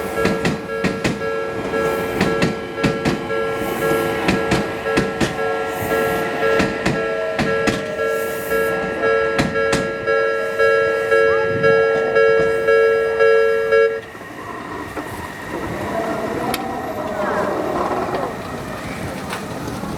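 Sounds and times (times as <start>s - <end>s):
level crossing warning bell: 0.0s - 18.8s
sharp knocks: 6.6s - 8.0s.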